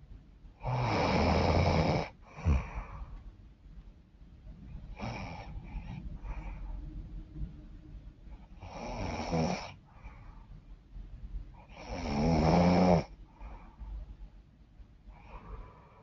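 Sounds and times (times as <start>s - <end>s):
quiet breathing: 0.0s - 3.6s, 4.4s - 12.0s, 12.7s - 16.0s
woman snoring: 0.6s - 3.0s, 8.6s - 9.8s, 11.7s - 13.1s.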